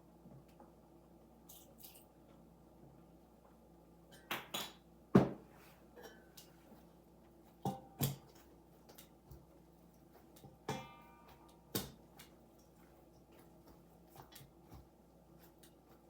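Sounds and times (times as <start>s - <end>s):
dishes and utensils clinking: 6.0s - 6.6s, 10.4s - 11.9s.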